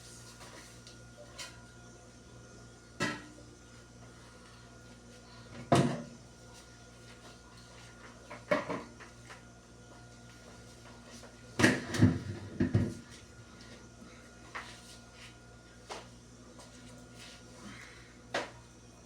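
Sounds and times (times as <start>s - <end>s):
knocks and clunks in a refrigerator: 5.5s - 6.2s, 8.4s - 9.0s, 11.6s - 13.2s.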